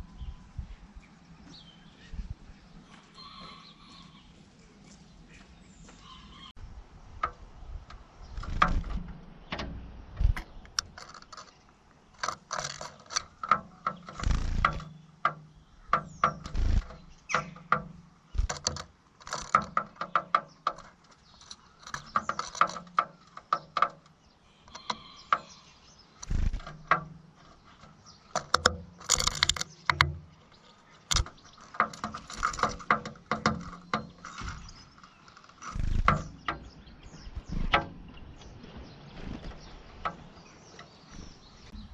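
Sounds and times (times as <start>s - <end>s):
bird beak tapping on glass: 13.4s - 20.9s.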